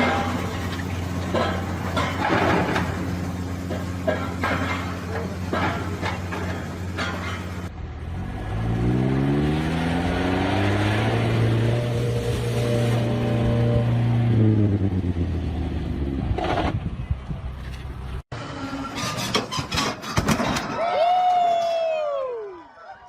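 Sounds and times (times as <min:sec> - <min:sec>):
vehicle engine revving: 0:07.7 - 0:16.8.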